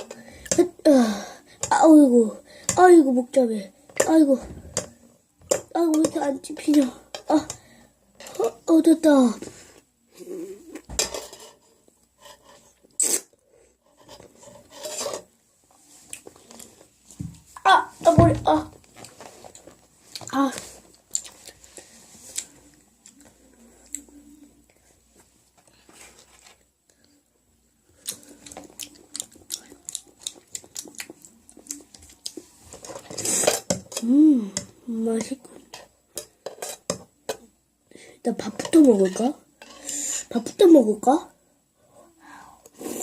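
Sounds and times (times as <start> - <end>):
chewing: 28.0 - 32.5
rasping eating noises: 28.0 - 34.1.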